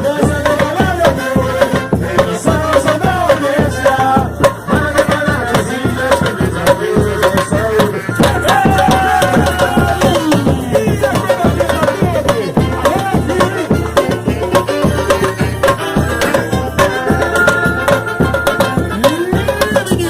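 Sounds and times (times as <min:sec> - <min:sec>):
fast percussion beat: 0:00.0 - 0:20.0
person singing a melody: 0:00.0 - 0:20.0.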